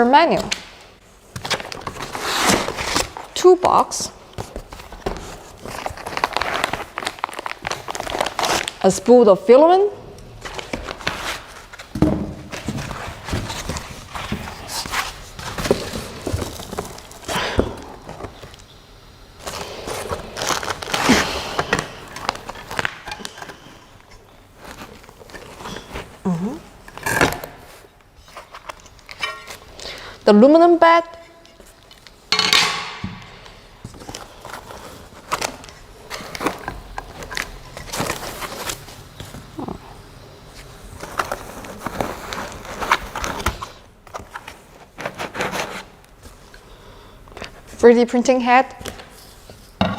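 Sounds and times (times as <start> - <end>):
cardboard and foam rustling: 1.2 - 9.0, 10.4 - 18.5, 19.4 - 29.7, 33.7 - 46.6.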